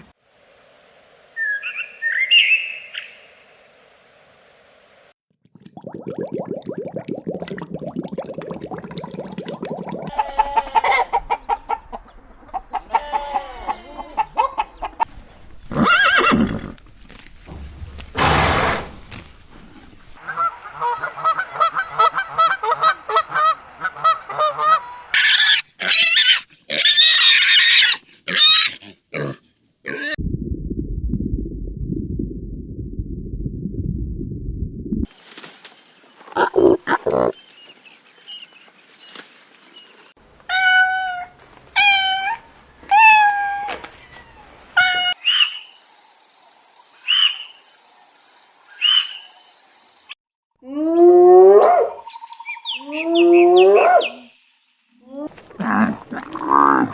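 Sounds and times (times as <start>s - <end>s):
animal squeals: 40.5s - 45.5s
pitched animal call: 40.5s - 45.5s.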